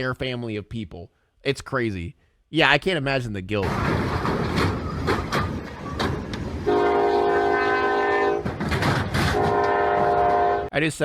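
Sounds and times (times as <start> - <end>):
train rumbling on tracks: 3.6 - 10.7
locomotive air horn chord: 6.6 - 8.5, 9.3 - 10.7
sharp knocks: 8.4 - 9.7.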